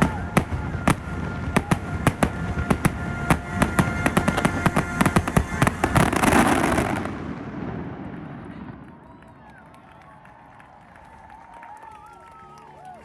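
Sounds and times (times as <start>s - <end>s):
fireworks bangs and crackling: 0.0s - 9.6s.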